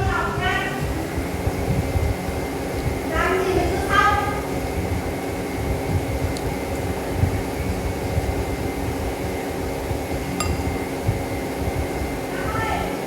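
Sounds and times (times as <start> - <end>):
machine humming: 10.4 - 11.5.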